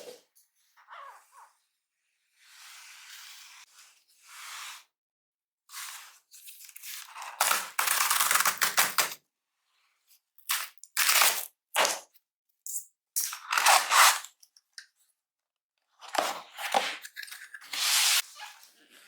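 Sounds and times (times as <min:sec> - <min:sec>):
cardboard tearing: 0:13.5 - 0:14.3
cardboard packaging rubbing and sliding: 0:17.6 - 0:18.6.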